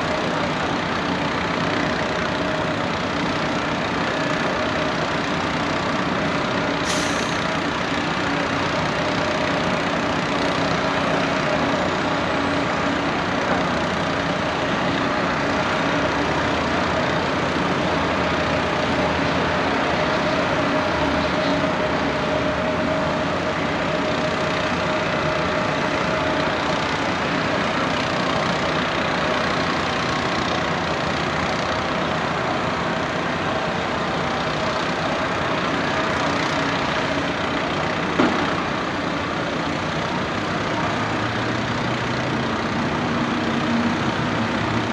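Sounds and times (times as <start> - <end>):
sharp hiss: 6.8 - 7.5.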